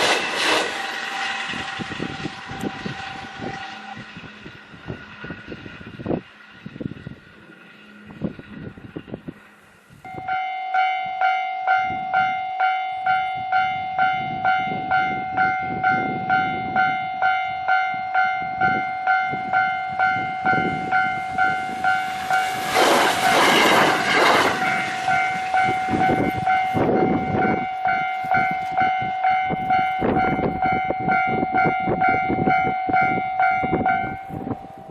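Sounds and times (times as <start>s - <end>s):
train wheels clattering on rails: 0.0s - 9.8s, 18.6s - 34.9s
level crossing warning bell: 10.1s - 22.6s, 24.1s - 34.9s.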